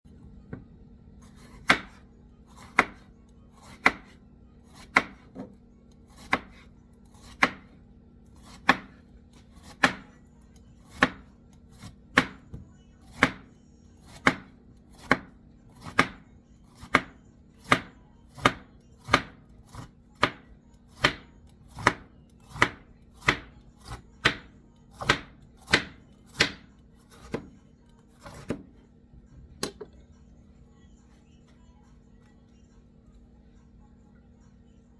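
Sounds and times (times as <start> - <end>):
knife chopping vegetable: 1.2 - 10.2, 10.8 - 28.8.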